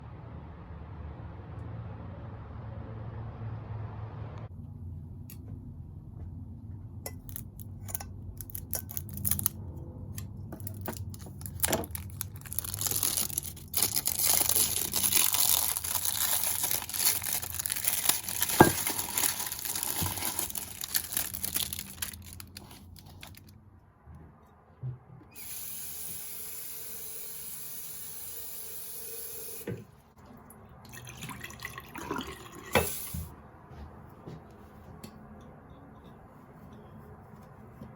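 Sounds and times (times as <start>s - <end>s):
water pouring and splashing: 30.8s - 33.3s.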